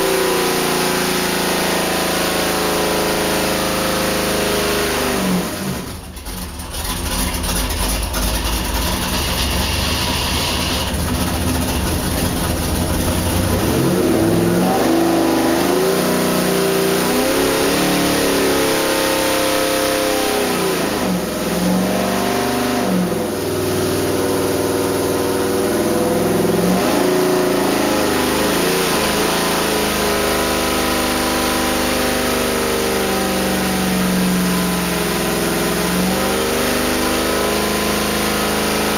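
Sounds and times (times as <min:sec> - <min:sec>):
engine revving up and down: 0:00.0 - 0:06.0, 0:08.4 - 0:38.9.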